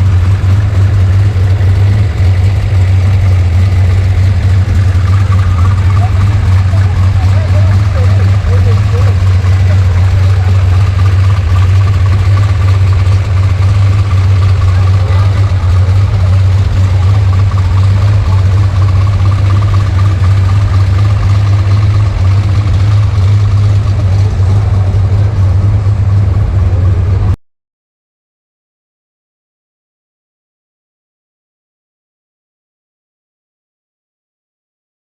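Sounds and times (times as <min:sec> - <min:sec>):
car engine idling: 0:00.0 - 0:27.4.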